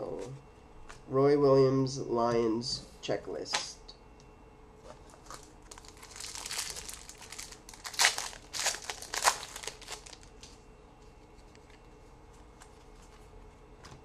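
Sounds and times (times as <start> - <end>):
wrapper crinkling and tearing: 5.1 - 10.6.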